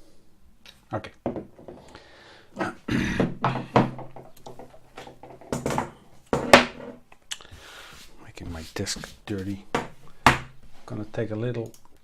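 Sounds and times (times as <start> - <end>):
parts knocking on a desk: 1.2 - 1.8, 3.2 - 7.0.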